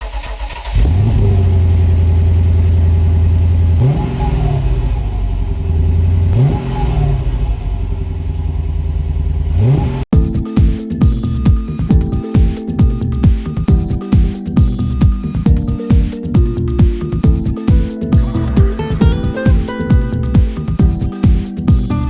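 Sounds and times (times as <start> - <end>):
car engine revving: 0.0 - 10.1, 18.1 - 19.5.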